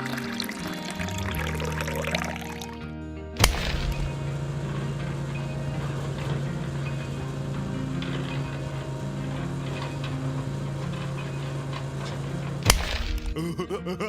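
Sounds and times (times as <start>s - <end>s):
small motor humming and ticking: 3.4s - 13.3s.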